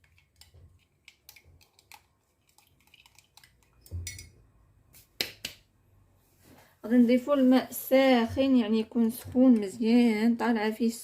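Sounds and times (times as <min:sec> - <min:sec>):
spoon tapping against glass: 0:04.0 - 0:04.4.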